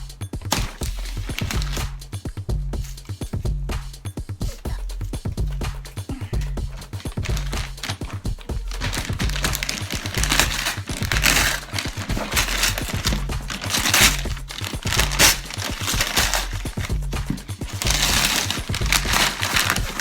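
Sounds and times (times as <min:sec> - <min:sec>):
music with repeating bass line: 0:00.0 - 0:20.0
wrapping paper crinkling and tearing: 0:00.5 - 0:01.9, 0:06.7 - 0:20.0.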